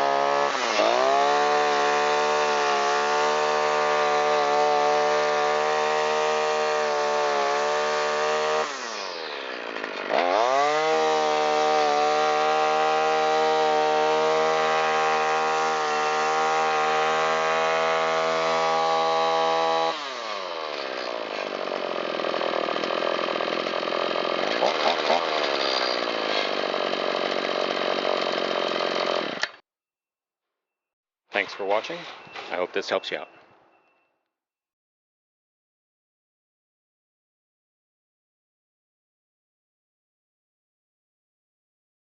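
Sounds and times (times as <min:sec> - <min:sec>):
string trimmer engine revving: 0:00.0 - 0:29.6.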